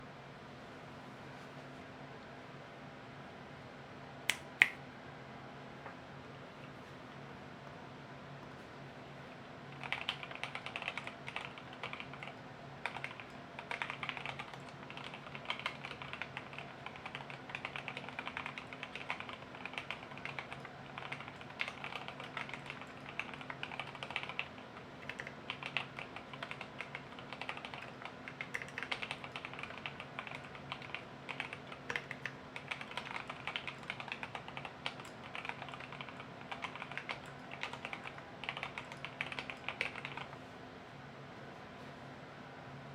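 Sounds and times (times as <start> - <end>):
faint steady hum: 0.0 - 42.9
fast mechanical keyboard typing: 9.7 - 40.4.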